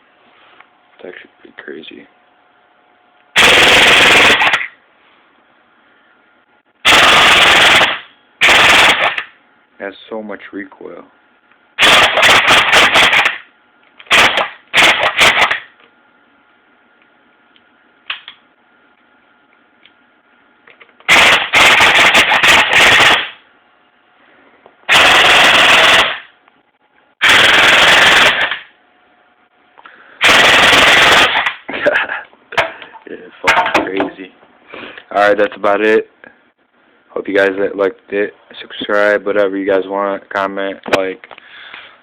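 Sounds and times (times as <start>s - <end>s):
airsoft gun firing rapid bursts: 3.4s - 4.7s, 6.8s - 9.2s, 11.8s - 13.4s, 14.1s - 15.6s, 21.1s - 23.4s, 24.9s - 26.3s, 27.2s - 28.6s, 30.2s - 31.6s.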